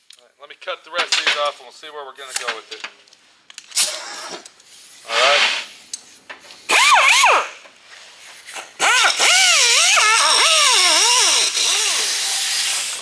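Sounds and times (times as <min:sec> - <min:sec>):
angle grinder cutting metal: 0:08.8 - 0:13.0.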